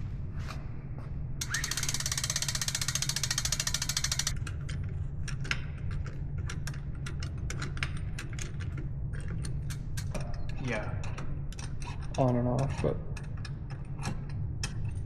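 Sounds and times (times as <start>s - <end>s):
steady low hum: 1.4s - 4.3s
mechanical clicks: 1.4s - 4.4s.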